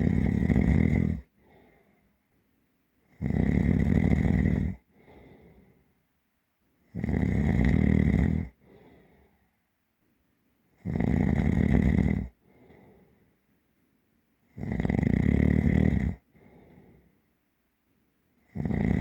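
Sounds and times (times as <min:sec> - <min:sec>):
person snoring: 0:00.0 - 0:01.3, 0:03.2 - 0:05.6, 0:07.0 - 0:08.6, 0:10.8 - 0:12.4, 0:14.6 - 0:16.2, 0:18.5 - 0:19.0
person breathing: 0:01.3 - 0:02.2, 0:04.9 - 0:06.0, 0:08.5 - 0:09.6, 0:12.4 - 0:13.5, 0:16.3 - 0:17.3.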